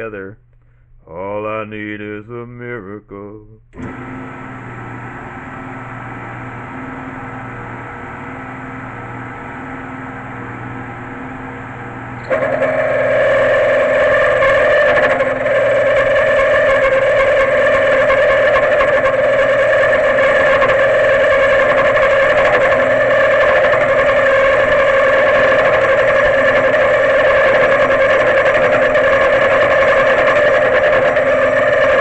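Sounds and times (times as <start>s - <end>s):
milling machine motor hum: 3.7s - 32.0s
high-pitched cutting whine: 10.3s - 32.0s.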